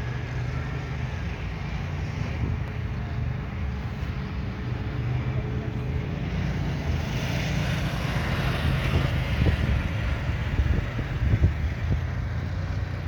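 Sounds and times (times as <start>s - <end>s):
buggy engine rumbling: 0.0s - 13.0s
wind noise: 8.0s - 12.5s.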